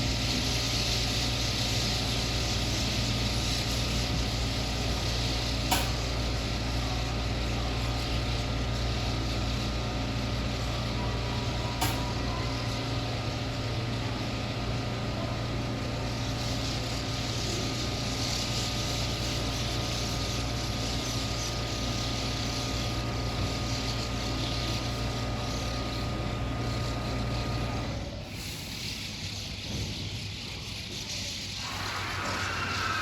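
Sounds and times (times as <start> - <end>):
electric train humming: 0.0 - 29.8, 31.4 - 33.0.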